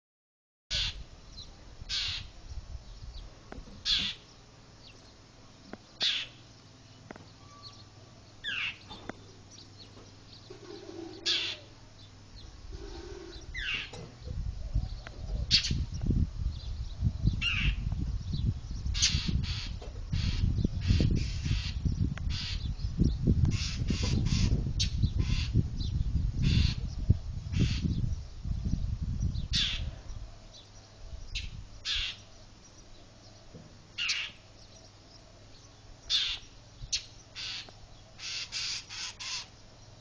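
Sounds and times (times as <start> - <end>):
bird alarm calls: 0.7 - 2.4, 3.8 - 5.1, 6.0 - 6.5, 7.1 - 16.0, 17.4 - 17.9, 18.8 - 28.1, 29.4 - 39.7
low rumble on microphone: 6.9 - 37.9.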